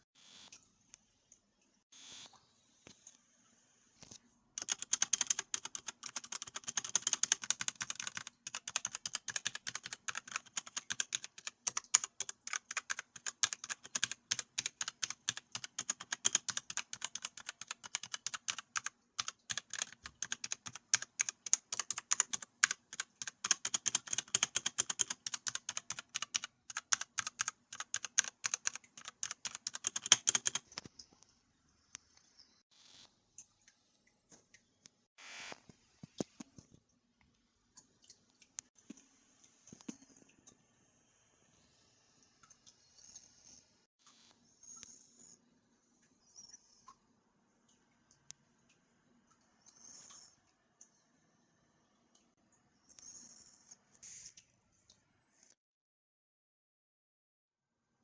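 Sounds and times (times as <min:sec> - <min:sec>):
fast typing on mechanical keyboard: 0:04.6 - 0:30.8.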